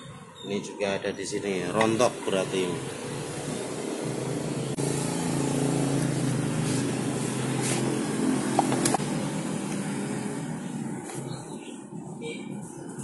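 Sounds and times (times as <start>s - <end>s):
vehicle engine running: 1.8s - 13.0s.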